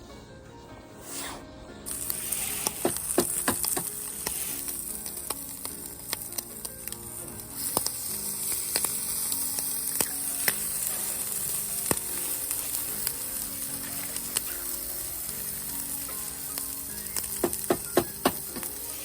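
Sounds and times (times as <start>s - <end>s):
food sizzling in a frying pan: 1.8s - 19.0s.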